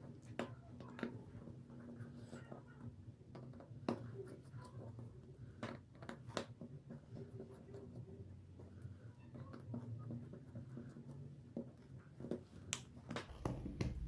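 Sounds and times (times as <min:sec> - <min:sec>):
low steady hum: 0:13.3 - 0:14.0.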